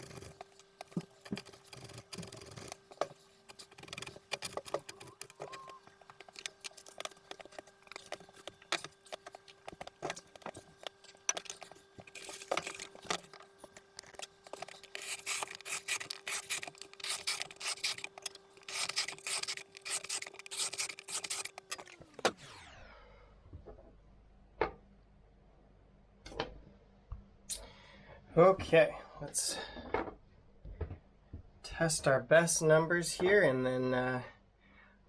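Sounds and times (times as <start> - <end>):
small motor humming: 0.0 - 13.3, 14.0 - 22.8
scraping and rubbing strokes: 0.0 - 22.0.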